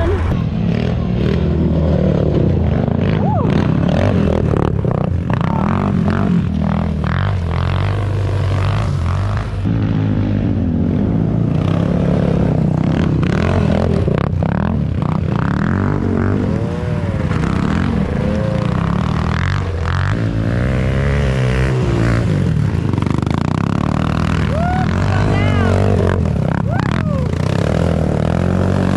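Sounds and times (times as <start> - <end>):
vehicle engine revving: 0.0 - 28.9.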